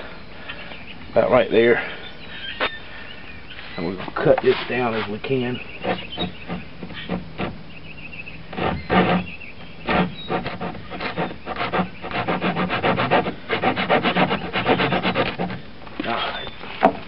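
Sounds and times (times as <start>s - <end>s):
hand saw cutting wood: 4.0s - 7.6s, 8.5s - 15.6s.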